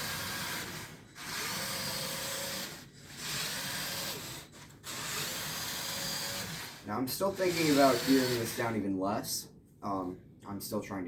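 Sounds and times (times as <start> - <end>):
toy motors and gears whirring: 0.0 - 8.8.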